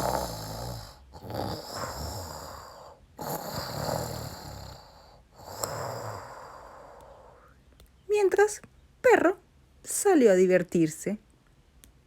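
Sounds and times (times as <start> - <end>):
rattling snore: 0.0 - 7.4.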